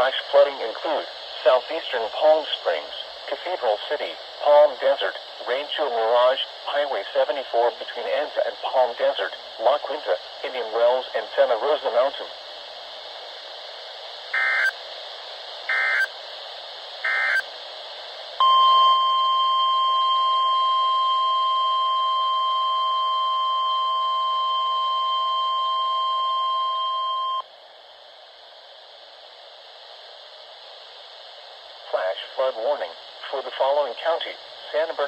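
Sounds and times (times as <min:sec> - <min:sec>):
radio hiss: 0:00.0 - 0:35.0
screechy data bursts: 0:14.3 - 0:14.8, 0:15.7 - 0:16.1, 0:17.0 - 0:17.5
steady warning alarm tone: 0:14.4 - 0:14.8, 0:15.7 - 0:16.1, 0:17.0 - 0:17.4, 0:18.4 - 0:27.4.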